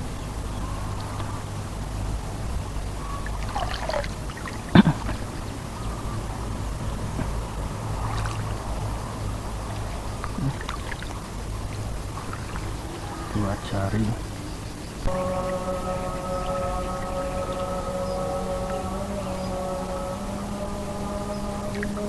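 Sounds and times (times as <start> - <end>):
steady low hum: 0.0 - 22.0
water trickling and sloshing: 2.3 - 18.9.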